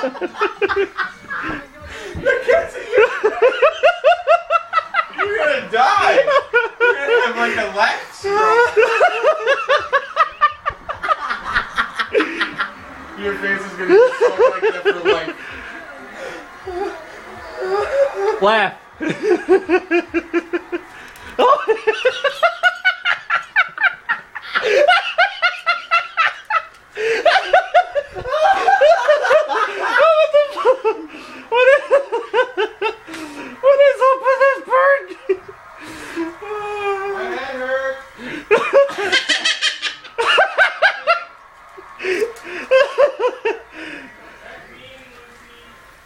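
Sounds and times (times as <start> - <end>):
person laughing: 8.3 - 12.8, 16.2 - 18.4.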